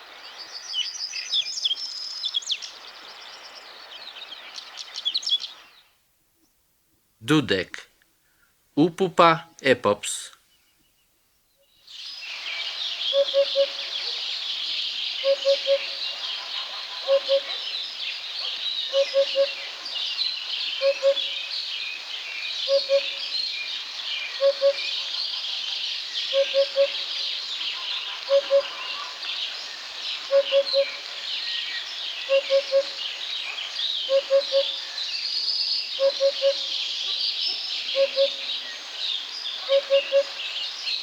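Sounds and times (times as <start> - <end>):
chorus of small birds: 11.8 - 41.0
hoopoe hollow call: 13.1 - 14.2, 15.2 - 17.7, 18.4 - 19.8, 20.8 - 21.4, 22.7 - 23.2, 24.3 - 29.3, 30.3 - 31.2, 32.3 - 33.0, 34.1 - 34.9, 36.0 - 36.8, 37.9 - 38.6, 39.6 - 40.4.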